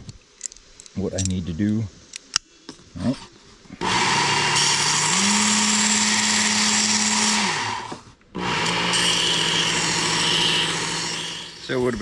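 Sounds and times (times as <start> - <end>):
harsh grinding hiss: 0.0 - 12.0
belt grinder motor hum: 3.8 - 11.8.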